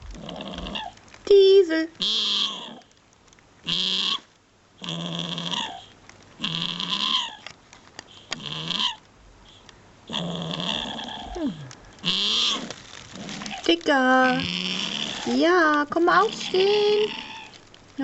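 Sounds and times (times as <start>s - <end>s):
dog grumbling and groaning: 0.0s - 1.0s, 2.4s - 2.9s, 4.8s - 7.5s, 8.4s - 9.0s, 10.1s - 15.5s, 16.1s - 17.6s.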